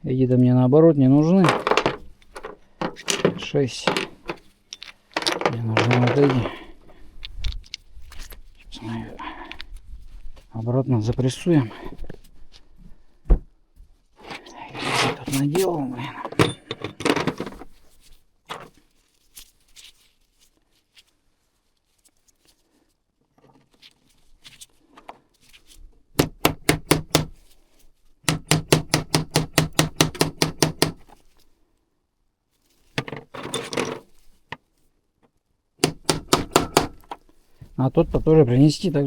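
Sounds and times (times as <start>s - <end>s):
small clicks of parts handled: 1.5s - 8.7s.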